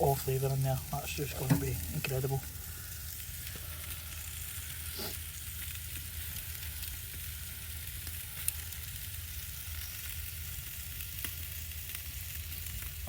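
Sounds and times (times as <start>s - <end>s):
sausage sizzling in a pot: 0.0s - 13.0s
fat popping: 1.3s - 2.5s.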